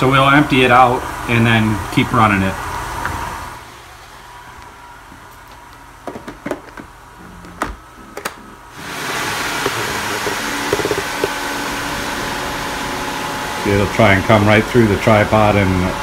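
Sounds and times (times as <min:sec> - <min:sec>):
robot vacuum motor rushing: 0:08.8 - 0:14.9
plastic clicks and knocks: 0:09.6 - 0:11.4.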